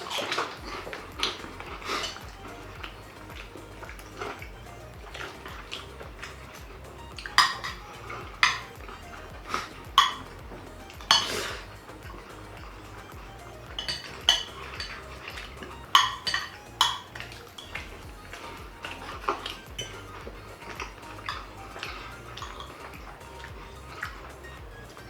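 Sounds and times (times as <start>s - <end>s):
cutlery clinking against dishes: 0.0s - 25.0s
cutlery scraping: 0.0s - 25.0s.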